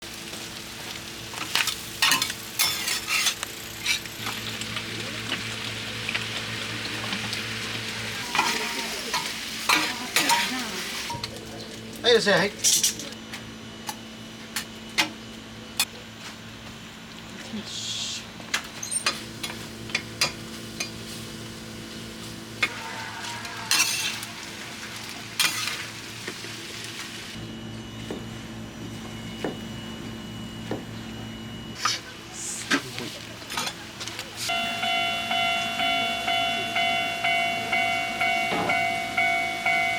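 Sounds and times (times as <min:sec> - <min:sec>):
meat sizzling on iron griddle: 0:00.0 - 0:11.3, 0:18.9 - 0:27.4
metal spatulas scraping and clattering: 0:01.6 - 0:04.1, 0:08.3 - 0:10.7, 0:23.7 - 0:24.3, 0:25.4 - 0:25.8.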